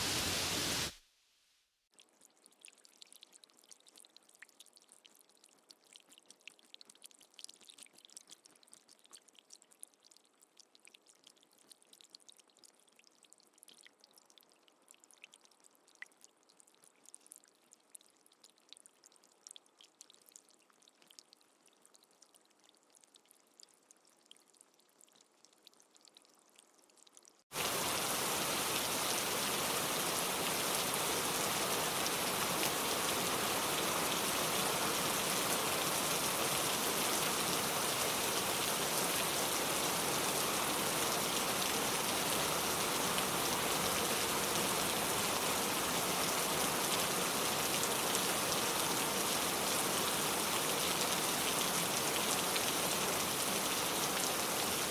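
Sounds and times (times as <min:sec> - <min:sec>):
steady rain: 0:00.0 - 0:01.0, 0:27.5 - 0:54.9
rain drips: 0:02.0 - 0:54.9.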